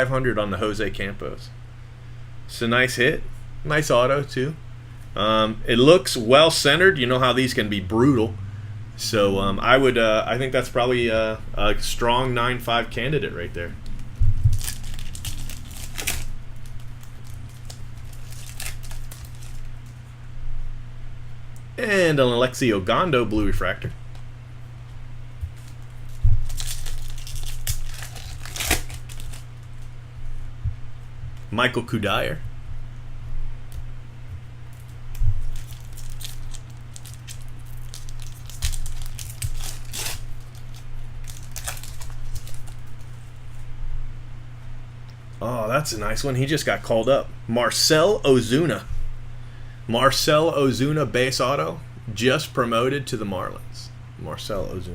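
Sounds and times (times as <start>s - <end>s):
steady low hum: 0.0s - 54.9s
card packs crinkling and rustling: 13.6s - 20.0s, 25.5s - 29.6s, 34.7s - 43.3s.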